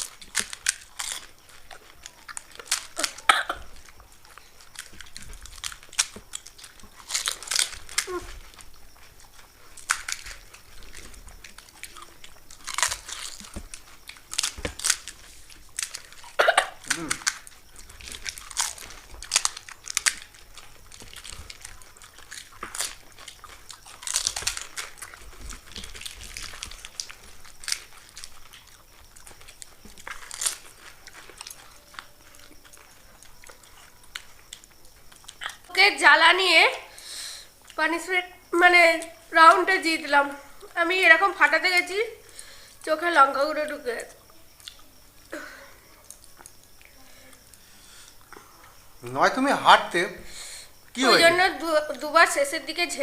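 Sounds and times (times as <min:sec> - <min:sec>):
crisp shells cracking: 0:00.0 - 0:35.6
crunching and chewing: 0:00.0 - 0:35.7, 0:36.9 - 0:40.8, 0:44.0 - 0:49.1.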